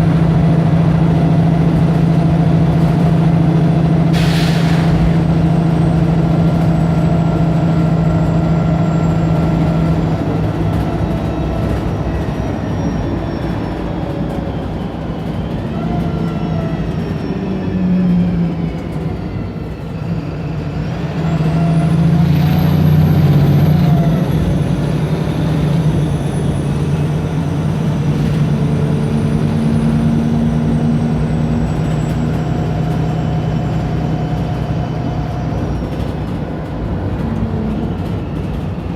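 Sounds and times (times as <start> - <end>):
bus diesel engine running: 0.0 - 38.9.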